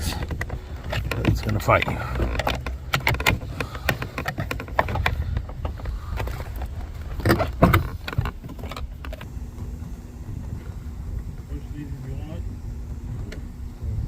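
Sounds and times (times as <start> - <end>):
plastic clicks and scrapes: 0.0 - 9.3.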